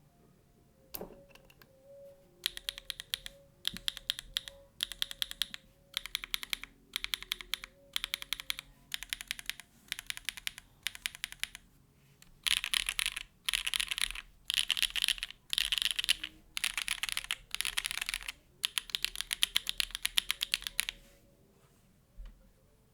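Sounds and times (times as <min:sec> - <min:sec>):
mechanical keyboard typing: 0:02.4 - 0:11.6, 0:12.2 - 0:21.0.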